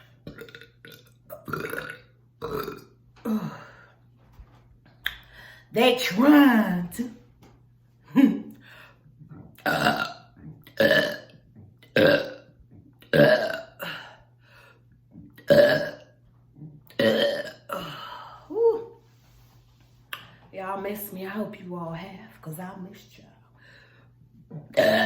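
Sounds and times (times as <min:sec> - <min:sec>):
woman burping: 0:00.2 - 0:03.9, 0:08.1 - 0:08.6, 0:09.4 - 0:14.2, 0:15.4 - 0:16.1, 0:16.9 - 0:18.8, 0:24.5 - 0:25.0.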